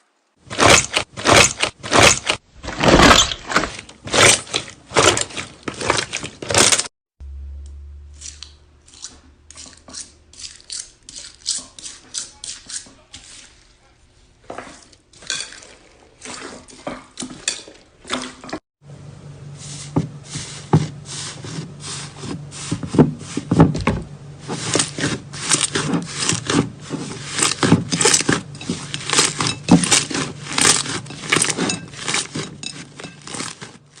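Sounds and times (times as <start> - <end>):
low steady hum: 7.2 - 11.4.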